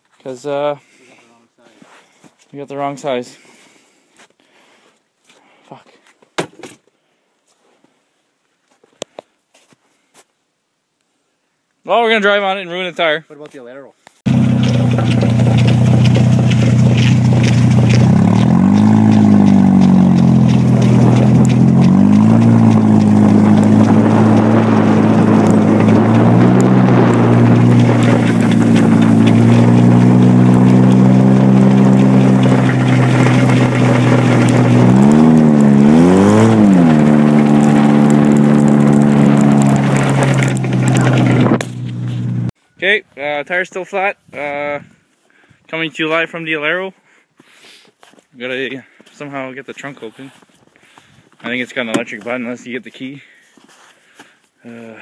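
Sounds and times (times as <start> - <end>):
car engine revving: 14.3 - 42.5.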